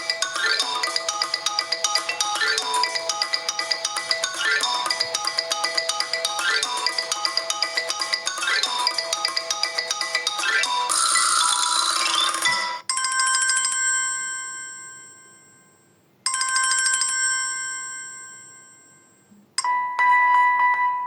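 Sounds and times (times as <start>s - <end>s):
melodic phone tone: 0.0s - 12.9s.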